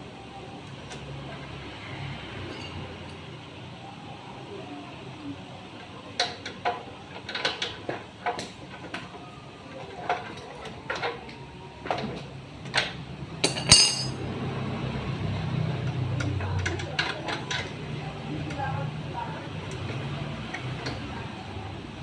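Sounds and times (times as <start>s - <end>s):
metal tools clinking: 2.5s - 2.9s, 13.4s - 14.2s.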